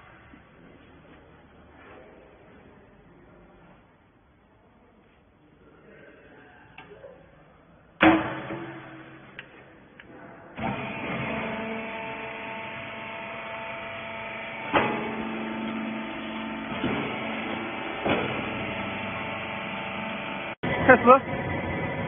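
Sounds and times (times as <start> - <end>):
loud metal bang: 8.0 - 9.4
baler motor humming: 10.6 - 22.0.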